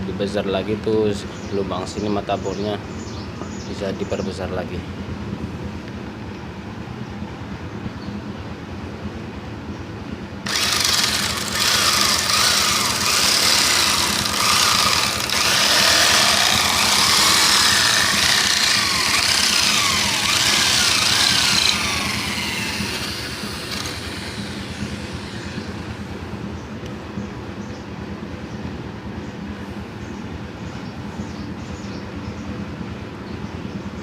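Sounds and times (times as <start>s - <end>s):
power drill turning wood: 10.4s - 26.1s
rattle: 10.5s - 26.0s.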